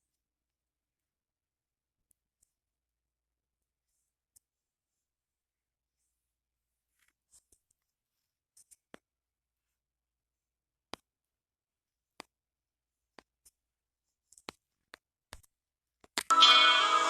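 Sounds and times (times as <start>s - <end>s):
music with sung vocals: 16.3s - 17.0s.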